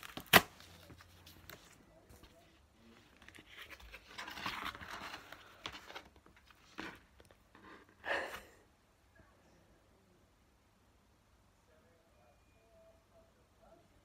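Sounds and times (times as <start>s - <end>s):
packaging rustling and crinkling: 0.0s - 7.6s.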